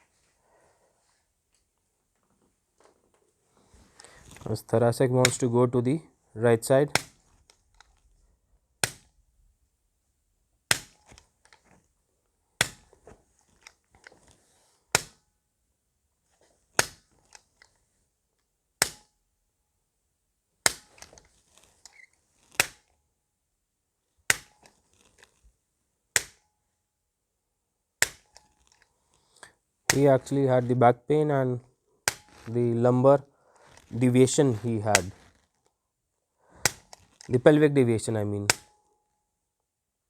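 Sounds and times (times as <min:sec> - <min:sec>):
handling noise: 0:32.1 - 0:35.7.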